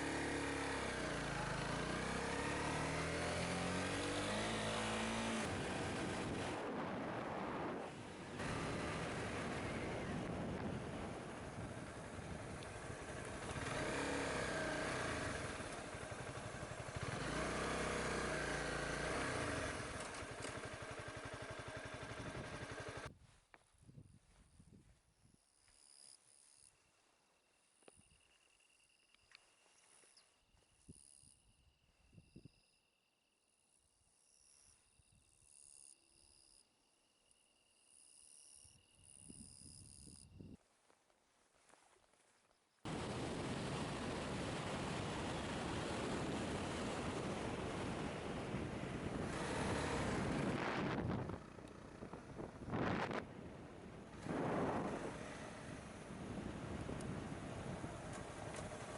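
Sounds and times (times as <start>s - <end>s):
motorcycle engine running: 0.0s - 23.1s, 42.9s - 58.9s
wind noise: 5.3s - 13.7s, 42.9s - 58.9s
insects trilling: 25.2s - 40.6s.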